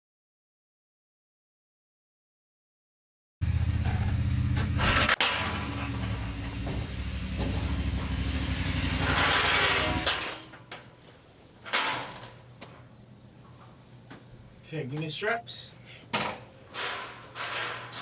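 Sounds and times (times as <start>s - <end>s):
engine running: 3.4s - 10.5s.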